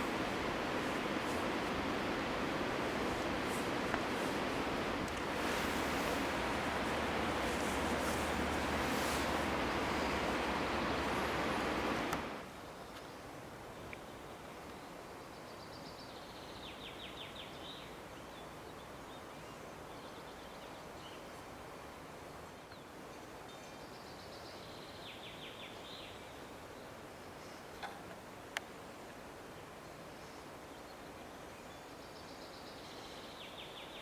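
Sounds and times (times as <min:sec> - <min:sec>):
songbird singing: 0:00.0 - 0:13.2, 0:29.9 - 0:34.0
faint background hiss: 0:00.0 - 0:34.0.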